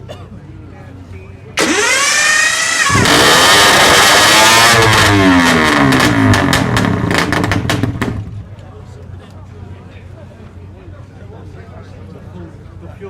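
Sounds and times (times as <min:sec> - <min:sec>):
motorcycles revving: 0:01.6 - 0:08.3
sharp exhaust cracks: 0:01.6 - 0:08.5.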